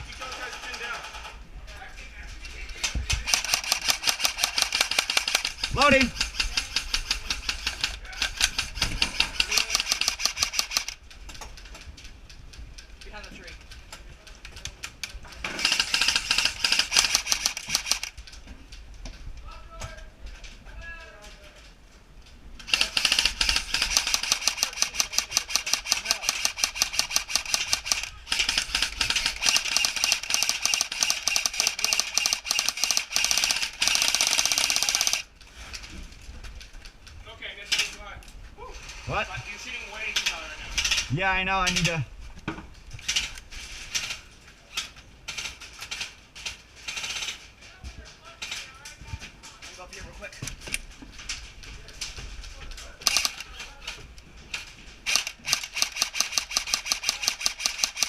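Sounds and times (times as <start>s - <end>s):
airsoft rifle rapid fire: 3.1s - 11.0s, 15.5s - 18.2s, 22.6s - 35.3s, 53.0s - 53.4s, 55.1s - 58.0s.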